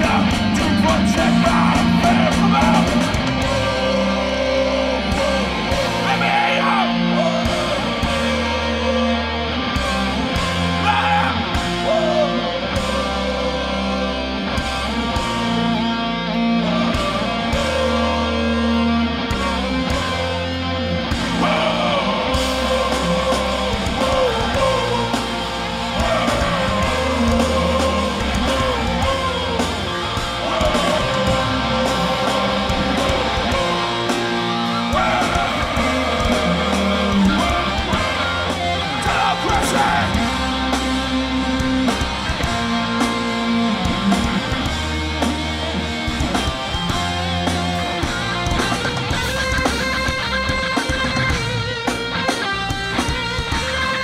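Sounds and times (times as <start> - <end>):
bass: 0.0 - 54.0
distorted electric guitars: 0.0 - 54.0
drums: 0.0 - 54.0.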